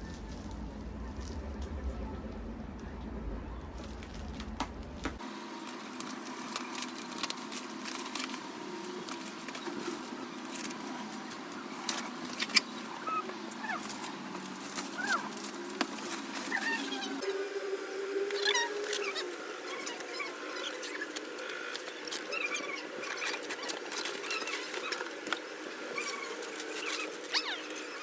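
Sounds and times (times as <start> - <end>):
steady low hum: 0.0 - 28.0
high gliding animal calls: 11.6 - 14.2, 14.8 - 15.4, 16.4 - 25.1, 25.9 - 28.0.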